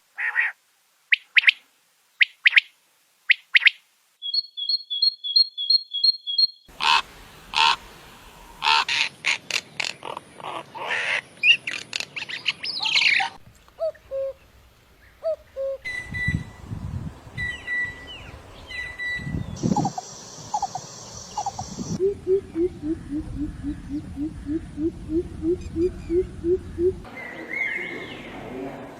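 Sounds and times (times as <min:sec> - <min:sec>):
songbird chirping: 0:03.3 - 0:10.2, 0:11.3 - 0:28.9
bird whistled notes: 0:04.2 - 0:06.7, 0:15.6 - 0:16.7, 0:17.4 - 0:22.0.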